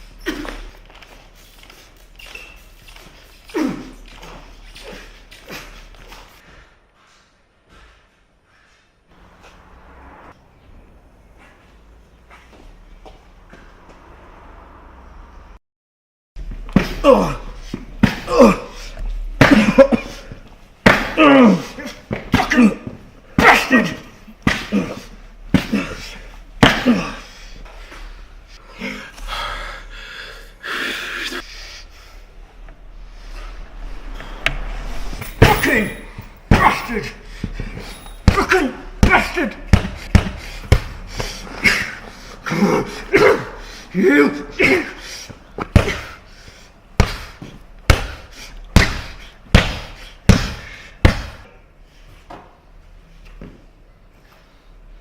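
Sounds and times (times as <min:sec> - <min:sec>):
person grunting and gasping: 0:03.5 - 0:05.9, 0:16.8 - 0:27.6, 0:35.2 - 0:46.2
heavy hissing breaths: 0:27.2 - 0:35.4, 0:40.0 - 0:44.0.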